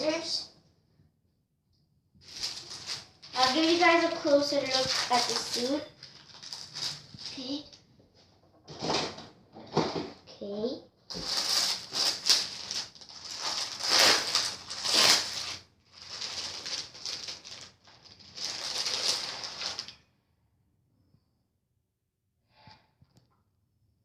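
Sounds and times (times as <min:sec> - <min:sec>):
plastic packaging crinkling: 0:02.2 - 0:07.7, 0:11.1 - 0:20.0.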